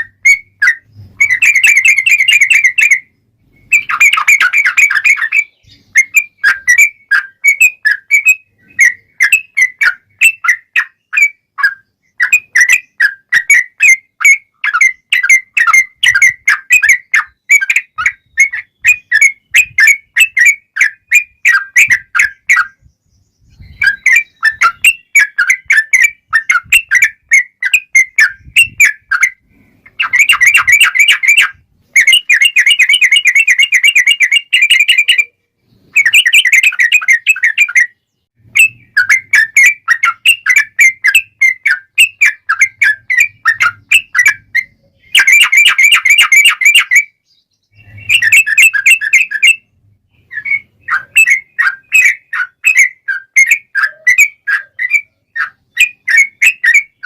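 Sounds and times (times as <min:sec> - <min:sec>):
bird singing bubbly chattering phrases: 0:00.0 - 0:57.0.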